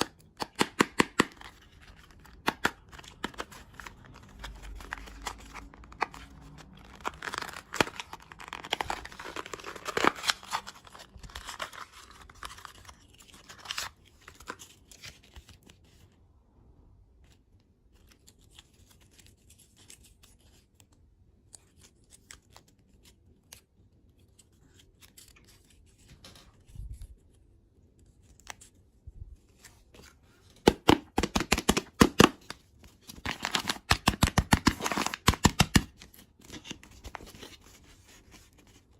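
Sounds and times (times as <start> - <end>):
candy wrapper tearing and crinkling: 0.2 - 15.1, 30.6 - 37.4.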